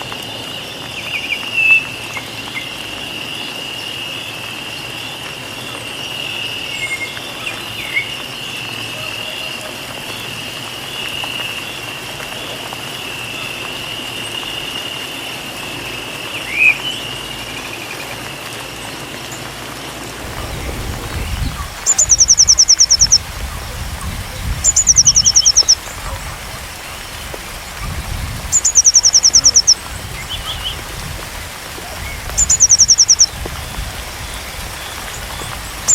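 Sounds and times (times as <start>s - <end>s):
low rumbling noise: 20.1s - 29.0s
songbird trills: 21.3s - 23.6s, 24.4s - 27.9s, 28.5s - 30.9s, 31.8s - 35.9s.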